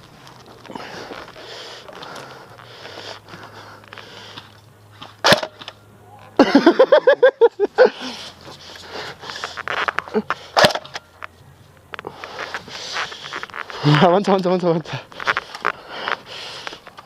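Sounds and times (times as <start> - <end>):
airsoft gun shots: 5.2 - 5.7, 10.6 - 11.0.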